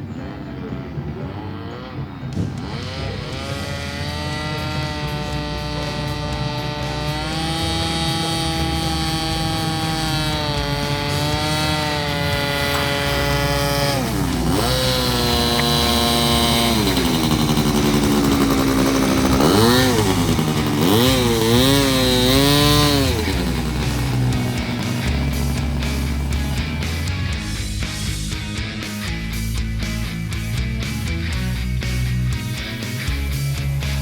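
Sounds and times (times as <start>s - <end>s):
model airplane engines buzzing: 0.0s - 28.2s.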